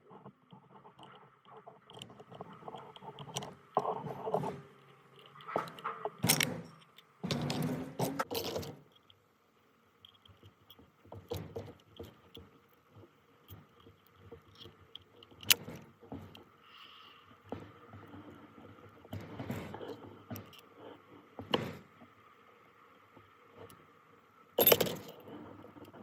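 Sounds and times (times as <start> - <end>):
metal parts and tools clinking: 1.9 - 9.1, 24.6 - 25.9.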